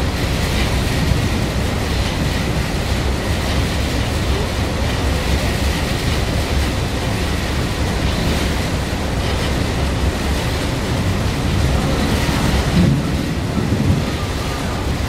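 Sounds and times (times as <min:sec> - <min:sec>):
water rushing: 0:00.0 - 0:15.0
wind rushing: 0:06.8 - 0:15.0
deep low rumble: 0:09.9 - 0:15.0.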